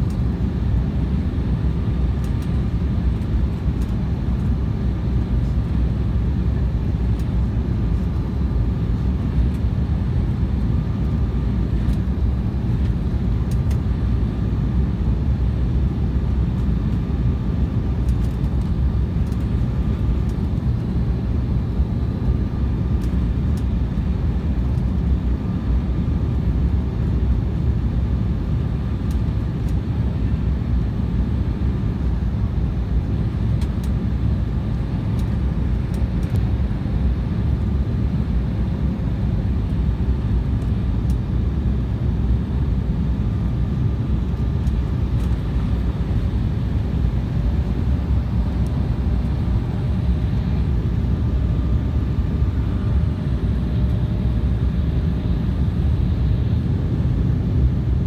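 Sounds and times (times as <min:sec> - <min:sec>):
airliner cabin rumble: 0:00.0 - 0:58.0.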